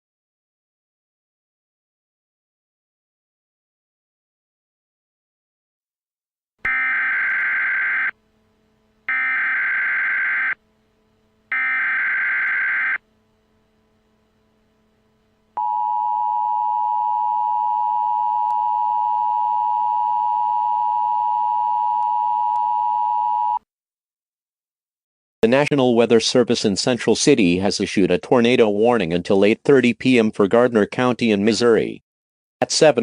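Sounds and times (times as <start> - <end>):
buzzy warbling data bursts: 9.1 - 10.6.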